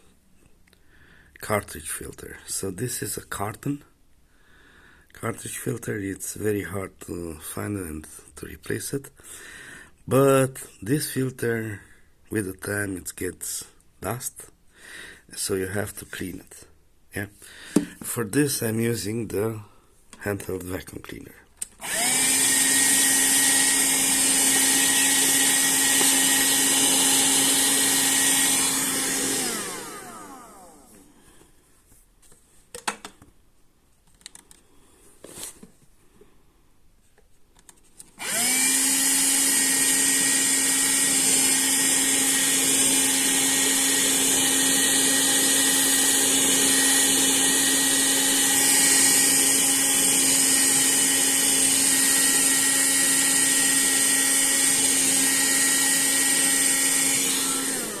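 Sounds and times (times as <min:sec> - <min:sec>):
handheld vacuum cleaner running: 0:21.8 - 0:31.2, 0:38.2 - 0:58.0
small clicks and knocks: 0:32.3 - 0:33.4, 0:37.2 - 0:38.1.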